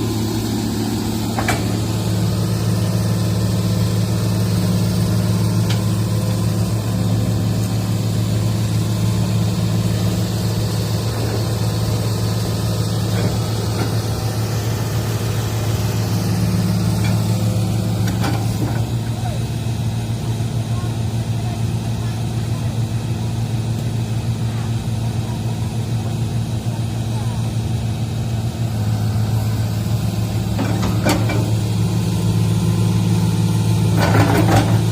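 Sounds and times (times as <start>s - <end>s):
diesel engine droning: 0.0s - 34.9s.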